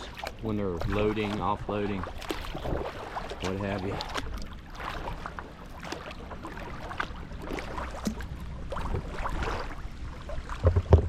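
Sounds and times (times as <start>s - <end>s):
wind rumbling on microphone: 0.0s - 4.4s, 8.1s - 11.0s
water slapping against kayak: 0.0s - 11.0s
low thumps: 10.6s - 11.0s.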